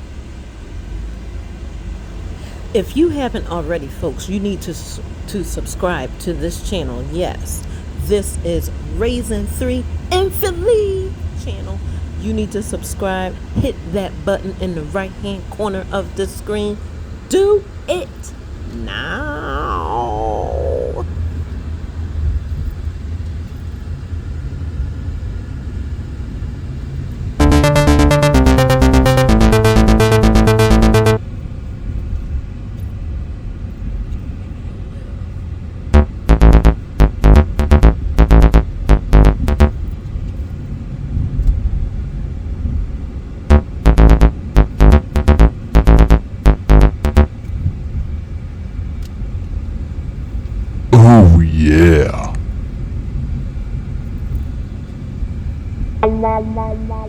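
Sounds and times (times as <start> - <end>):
bright synthesizer notes: 27.4 - 31.2, 36.0 - 39.7, 43.5 - 47.3, 51.0 - 51.5, 56.0 - 57.0
electronic music with steady beat: 27.4 - 31.2, 36.0 - 39.8, 43.5 - 47.3, 56.0 - 57.0.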